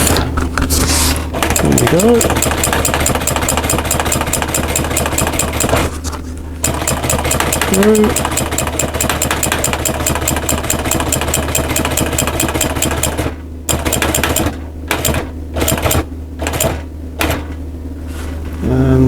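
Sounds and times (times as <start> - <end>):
sewing machine motor hum: 0.0 - 19.0
sewing machine needle clatter: 1.4 - 5.9, 6.6 - 17.4.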